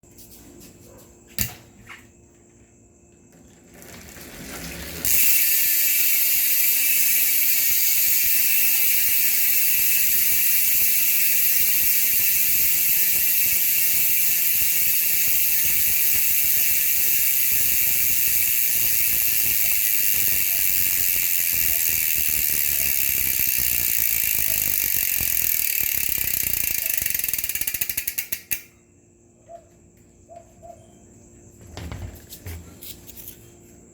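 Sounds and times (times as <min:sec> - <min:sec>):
bicycle hub freewheel clicking: 0:03.8 - 0:28.8.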